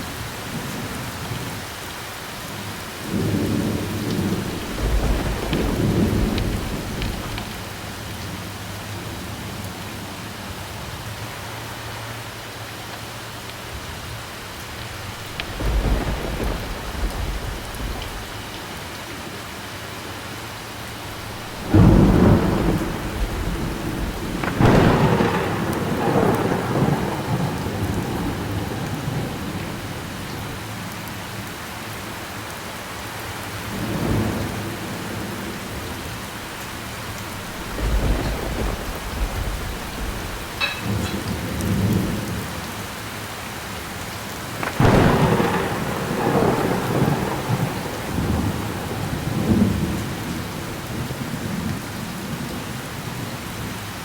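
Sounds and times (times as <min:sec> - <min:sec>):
heavy rain: 0:00.0 - 0:54.0
thunder cracks and rumbles: 0:03.0 - 0:08.4, 0:14.7 - 0:19.6, 0:20.7 - 0:30.8, 0:33.7 - 0:43.0, 0:43.9 - 0:52.6.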